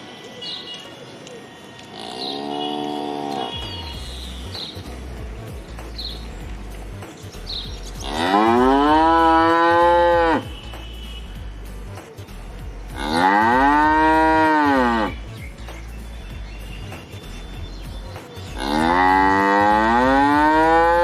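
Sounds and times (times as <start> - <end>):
cattle mooing: 1.9 - 3.7, 8.0 - 10.4, 13.0 - 15.1, 18.6 - 21.0.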